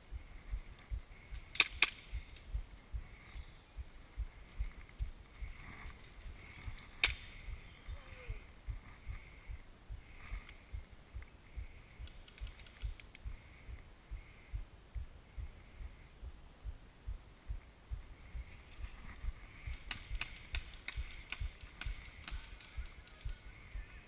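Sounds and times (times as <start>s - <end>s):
sharp crack: 1.4s - 2.5s, 6.8s - 7.6s, 19.6s - 23.4s
low footstep thumps: 3.8s - 5.2s.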